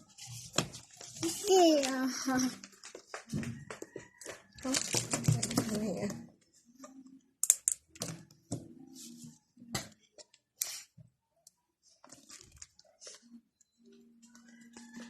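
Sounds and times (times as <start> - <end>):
packaging being handled: 0.2 - 6.0.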